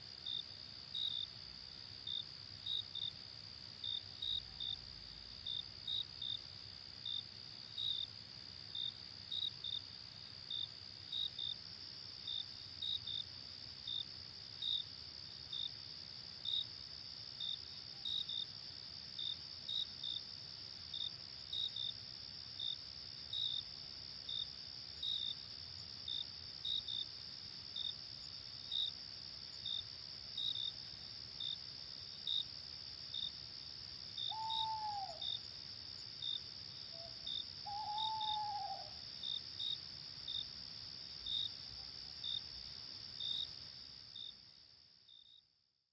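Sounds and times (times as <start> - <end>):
crickets chirping: 0.0 - 45.6
high insect trill: 20.9 - 45.4.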